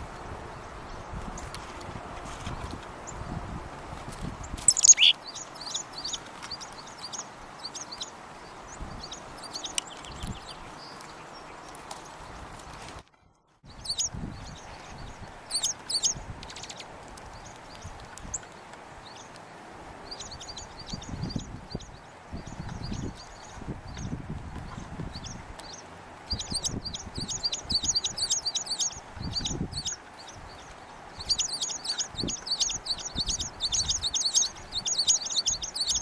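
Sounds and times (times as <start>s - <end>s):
songbirds chipping and twittering: 0.0s - 13.0s, 13.7s - 36.0s
sweeping bird call: 4.6s - 11.3s, 25.6s - 36.0s.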